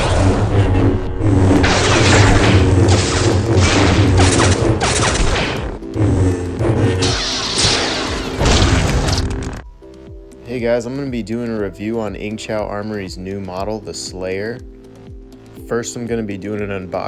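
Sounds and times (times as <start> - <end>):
lightsaber electric hum: 0.0 - 9.7
background music: 0.0 - 17.0
lightsaber clashing crashes: 1.6 - 5.8, 7.0 - 9.6.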